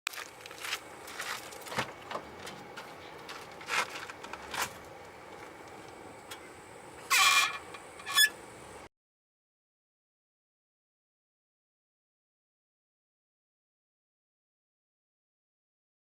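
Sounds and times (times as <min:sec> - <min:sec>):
car brakes squealing: 0:07.1 - 0:08.4.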